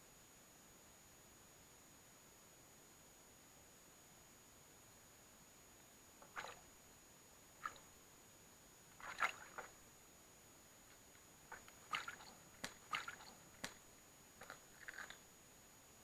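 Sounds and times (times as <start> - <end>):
water splashes and drips: 6.2 - 6.7, 7.6 - 7.9, 9.0 - 9.8, 11.5 - 13.8, 14.4 - 15.2.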